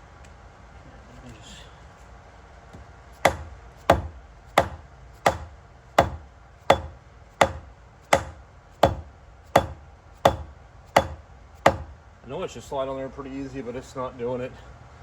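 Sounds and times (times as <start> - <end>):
mallet taps on metal: 3.3 - 11.9.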